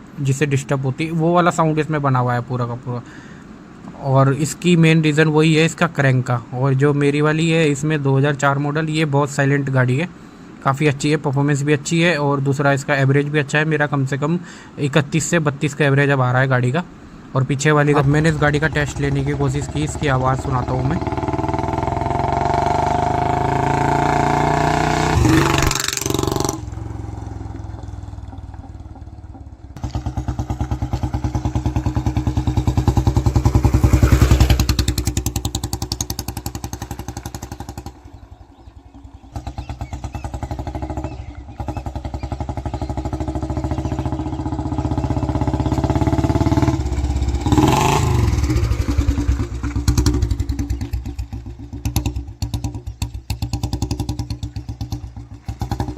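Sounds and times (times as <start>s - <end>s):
single-cylinder motorcycle engine thumping: 18.0s - 55.9s.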